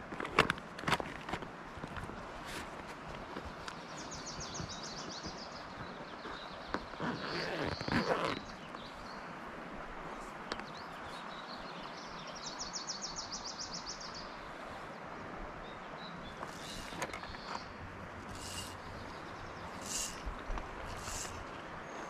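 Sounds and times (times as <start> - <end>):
creek rushing: 1.5 - 22.0
brief rustle: 16.4 - 22.0
rapid high bird trill: 16.5 - 17.7, 18.3 - 21.4.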